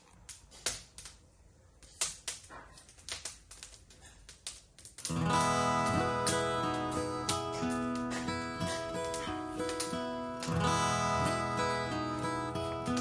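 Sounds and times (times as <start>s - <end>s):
guitar music: 5.1s - 13.0s.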